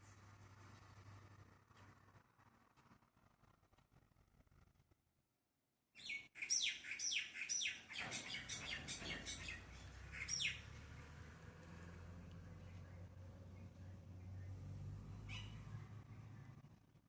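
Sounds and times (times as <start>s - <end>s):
bird chirping: 6.0s - 11.2s, 12.4s - 16.7s.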